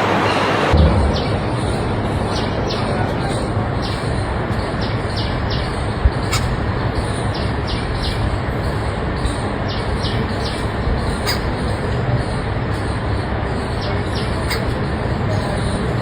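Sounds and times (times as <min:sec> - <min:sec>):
steady rushing noise: 0:00.0 - 0:11.1
bird chirping: 0:00.8 - 0:15.8.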